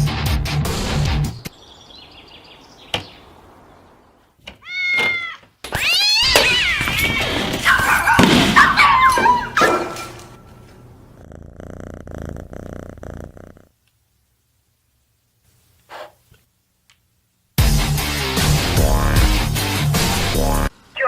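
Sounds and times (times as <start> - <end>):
cat meowing and yowling: 4.6 - 8.2
thud: 8.2 - 8.7.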